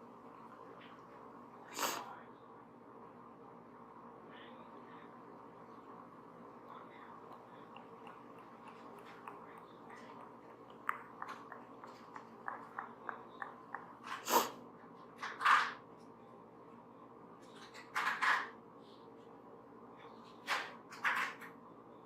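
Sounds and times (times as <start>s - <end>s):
person sniffling: 14.1s - 14.6s.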